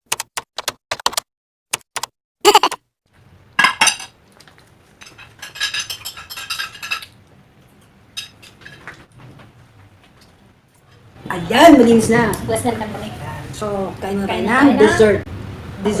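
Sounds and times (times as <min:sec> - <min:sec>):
cutlery clinking on plates: 0:03.6 - 0:04.1, 0:05.0 - 0:07.2, 0:07.8 - 0:09.1.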